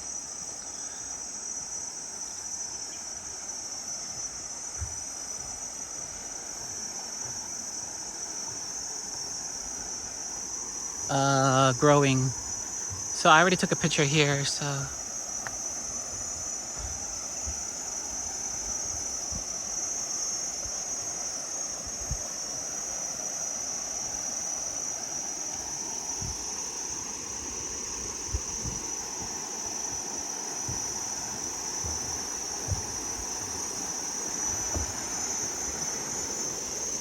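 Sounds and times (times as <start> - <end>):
insects droning: 0.0 - 37.0
low thumps: 30.6 - 33.6.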